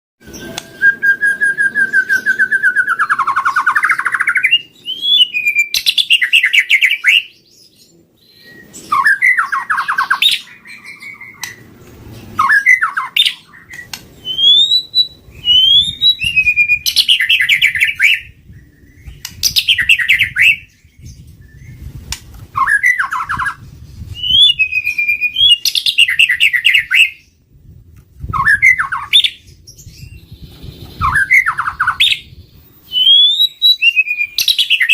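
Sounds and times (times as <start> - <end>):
bird singing whistles and trills: 0.2 - 11.7, 12.3 - 27.4, 28.2 - 34.9.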